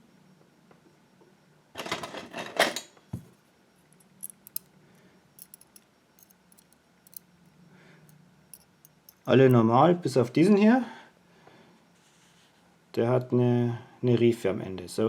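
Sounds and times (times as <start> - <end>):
small metal parts rattling: 4.0 - 4.7, 5.4 - 7.2
tiny sharp metal clicks: 4.0 - 4.7, 5.4 - 7.3, 8.5 - 9.6.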